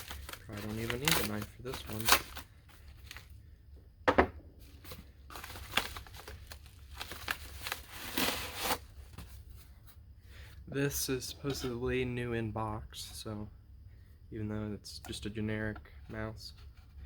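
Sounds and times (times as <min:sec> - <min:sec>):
cardboard tearing: 0:00.0 - 0:03.2, 0:05.3 - 0:09.2
packaging rustling: 0:00.0 - 0:03.4, 0:04.6 - 0:09.4.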